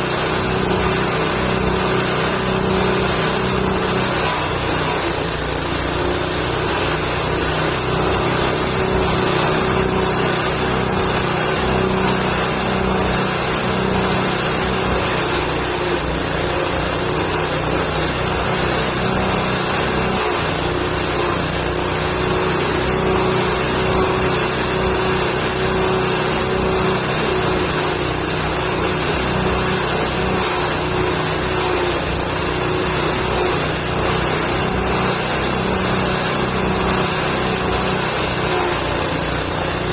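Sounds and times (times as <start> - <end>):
forage chopper shredding branches: 0.0 - 39.9.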